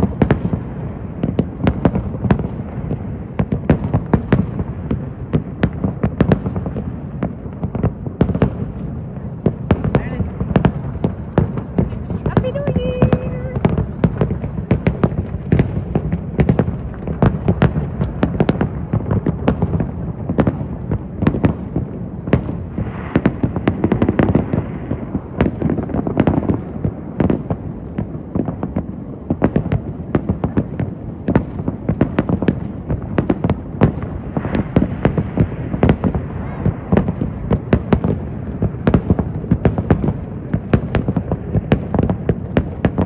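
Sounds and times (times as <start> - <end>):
fireworks bangs: 0.0 - 43.0
fireworks crackling: 0.0 - 43.0.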